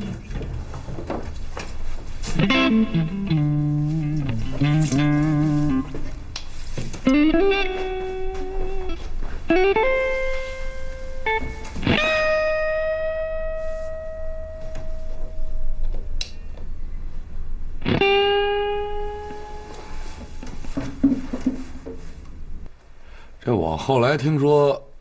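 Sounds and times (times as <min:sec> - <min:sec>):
slow melody of held notes: 0:02.6 - 0:06.1, 0:09.6 - 0:16.2.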